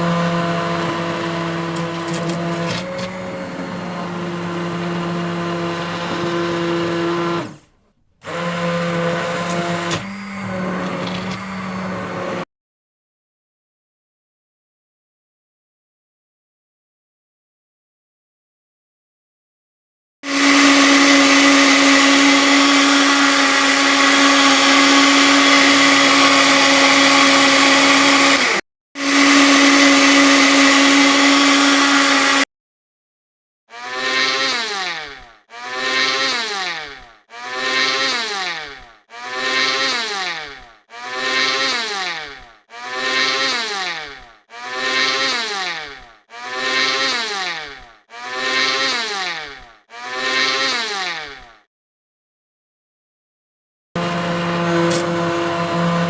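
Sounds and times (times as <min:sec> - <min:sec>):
electric blender motor: 0:00.0 - 0:12.5, 0:20.2 - 0:32.5, 0:33.7 - 0:51.7, 0:54.0 - 0:56.0.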